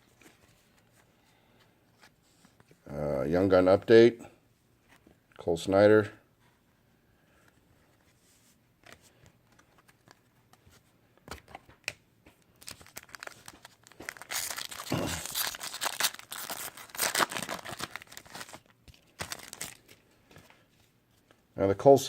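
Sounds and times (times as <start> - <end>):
card packaging crinkling and tearing: 12.4 - 20.1.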